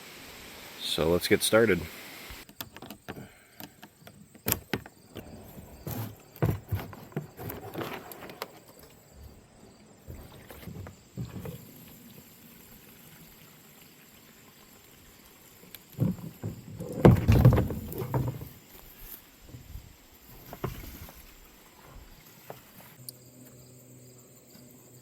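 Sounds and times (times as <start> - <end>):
clattering knocks: 16.0 - 18.6.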